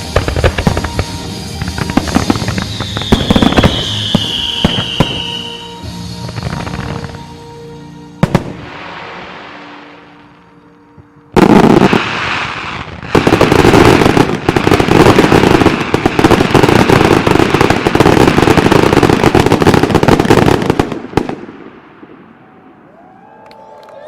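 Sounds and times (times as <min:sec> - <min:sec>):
fireworks bangs and crackle: 0:00.0 - 0:07.4, 0:08.2 - 0:10.2, 0:11.0 - 0:23.1.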